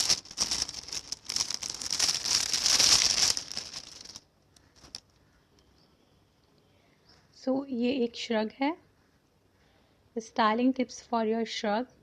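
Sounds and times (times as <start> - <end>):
packaging crinkling: 0.0 - 5.1.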